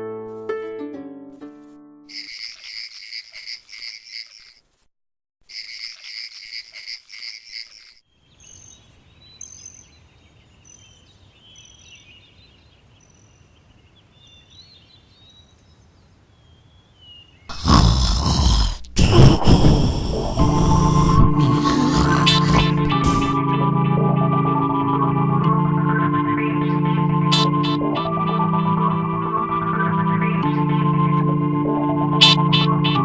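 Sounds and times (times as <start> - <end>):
pulsing high chirps: 0.3 - 0.7, 1.4 - 8.0, 8.6 - 9.0.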